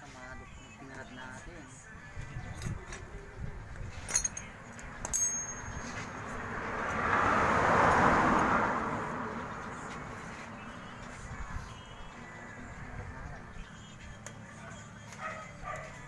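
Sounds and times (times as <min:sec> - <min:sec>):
sharp metallic clinks: 0:04.0 - 0:06.4
vehicle passing by: 0:04.2 - 0:13.2.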